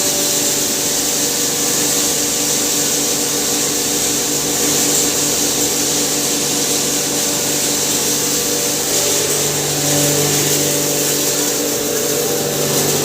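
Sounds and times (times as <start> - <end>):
grinder hissing: 0.0 - 13.0
steady hum: 0.0 - 13.0.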